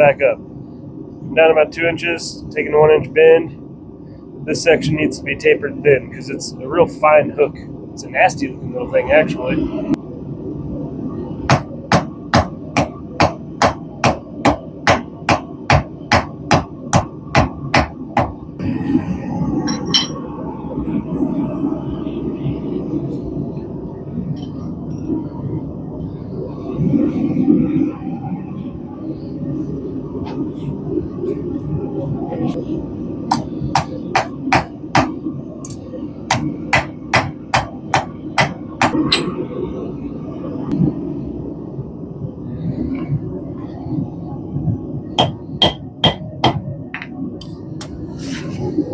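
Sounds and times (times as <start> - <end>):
low rumble: 0.0 - 48.9
hammer striking steel on anvil: 19.7 - 20.2, 45.2 - 46.6.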